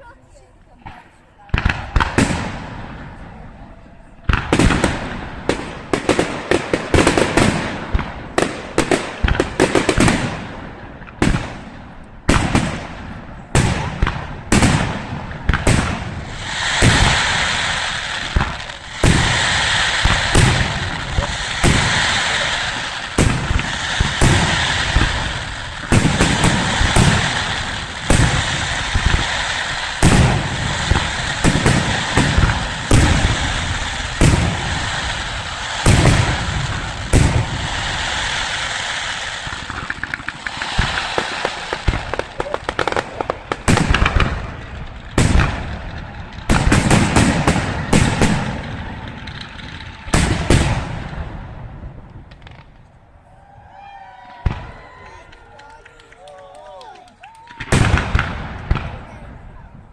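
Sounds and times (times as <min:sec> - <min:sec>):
fireworks crackle: 0:00.0 - 0:53.1, 0:54.4 - 0:59.9
fireworks bangs: 0:00.8 - 0:59.9.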